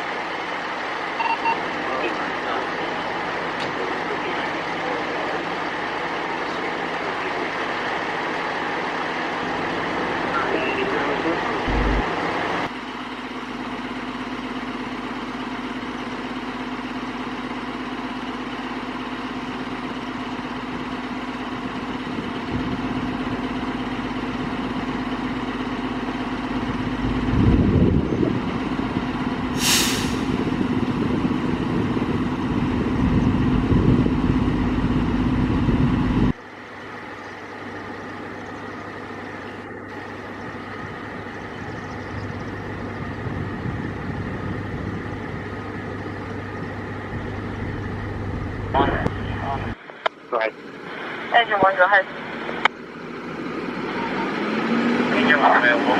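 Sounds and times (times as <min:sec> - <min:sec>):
fire engine diesel drone: 0:00.0 - 0:55.9
air brake hiss: 0:29.5 - 0:30.4.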